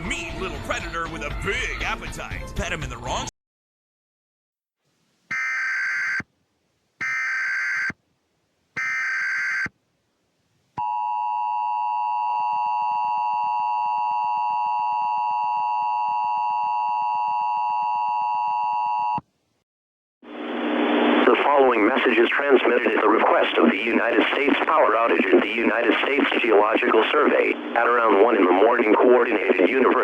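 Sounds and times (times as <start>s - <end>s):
buzzy two-tone data bursts: 5.3s - 6.2s, 7.0s - 8.0s, 8.8s - 9.7s
steady two-tone alert beep: 5.3s - 6.2s, 7.0s - 8.0s, 8.8s - 9.7s.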